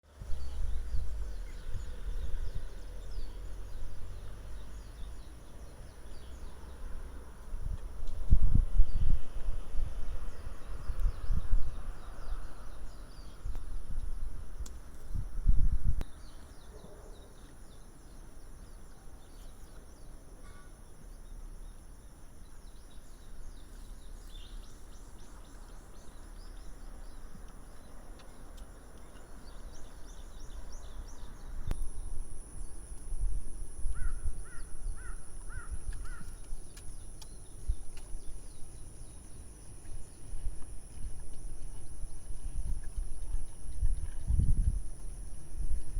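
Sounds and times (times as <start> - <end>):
wind rumbling on microphone: 0.0 - 20.0, 22.5 - 45.9
crow cawing: 20.4 - 20.7, 33.9 - 36.4.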